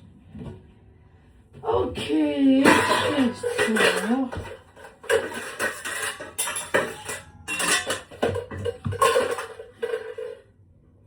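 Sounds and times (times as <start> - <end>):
dishes and cutlery clattering: 2.6 - 10.5.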